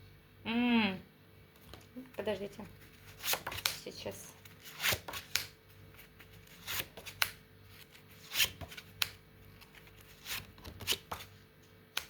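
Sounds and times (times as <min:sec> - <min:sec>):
cards being shuffled: 0:01.6 - 0:11.4
sharp card snaps: 0:03.2 - 0:03.9, 0:04.8 - 0:05.6, 0:06.7 - 0:07.4, 0:08.3 - 0:09.2.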